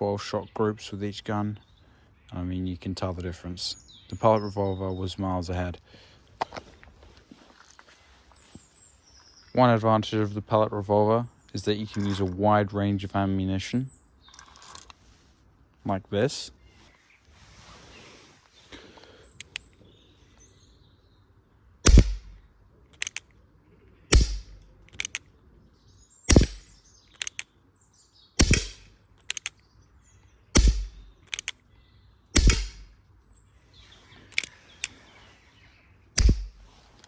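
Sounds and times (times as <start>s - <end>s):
faint short clicks: 19.3s - 19.8s, 22.9s - 23.4s, 24.8s - 25.3s, 27.1s - 27.5s, 29.2s - 29.7s, 31.2s - 31.6s, 34.3s - 35.0s
pellet revolver shots: 21.8s - 22.4s, 24.1s - 25.1s, 26.3s - 27.4s, 28.4s - 29.4s, 30.6s - 31.5s, 32.4s - 33.0s, 36.2s - 36.6s.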